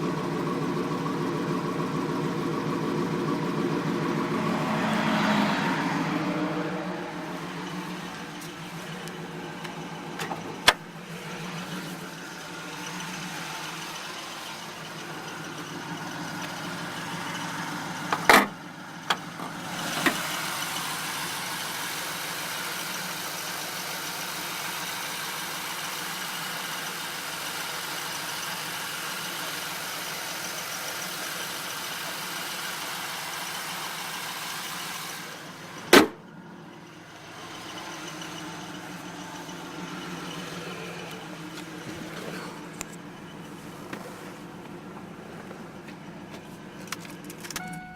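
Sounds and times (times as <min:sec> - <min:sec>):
car engine idling: 0:00.0 - 0:47.9.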